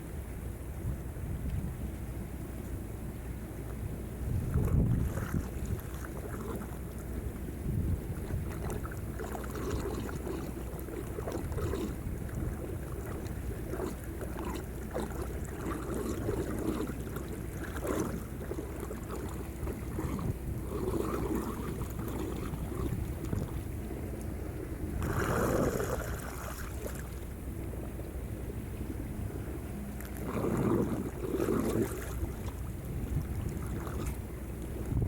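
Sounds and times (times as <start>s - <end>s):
steady low rumble: 0.0s - 35.0s
water churning and splashing: 3.6s - 35.0s.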